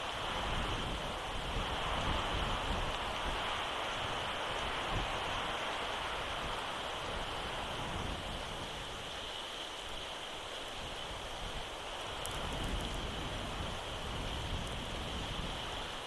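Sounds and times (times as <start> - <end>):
rain and sleet hiss: 0.0 - 16.0
faint ticks: 12.0 - 13.2, 14.5 - 14.8.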